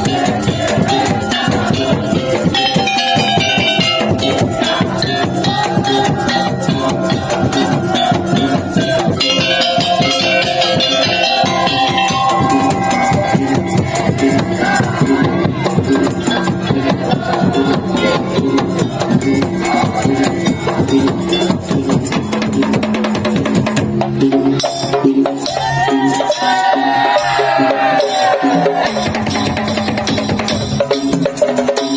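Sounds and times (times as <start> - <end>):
held melody line: 0.0 - 22.2
percussion music with drums: 0.0 - 31.9.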